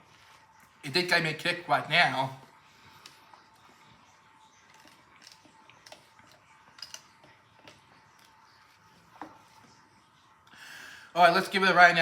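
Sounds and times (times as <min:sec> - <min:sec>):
eating noises: 0:02.4 - 0:09.8.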